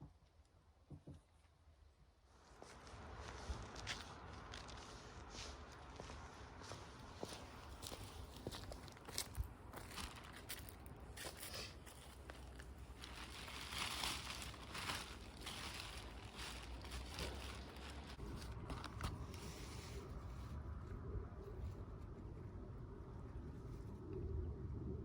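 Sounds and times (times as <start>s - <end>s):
dry leaves and twigs crunching: 2.6s - 20.6s.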